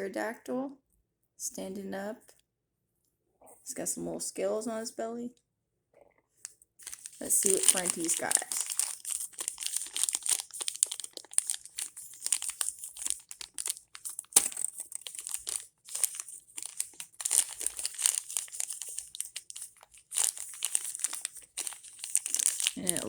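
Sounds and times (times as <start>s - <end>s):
wrapper crinkling and tearing: 6.8s - 23.0s.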